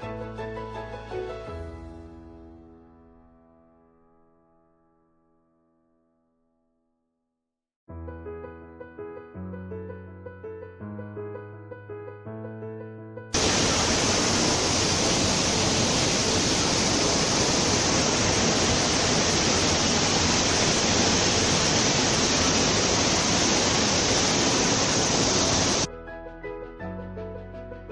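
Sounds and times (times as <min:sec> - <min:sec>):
steady rushing noise: 0:13.4 - 0:25.9.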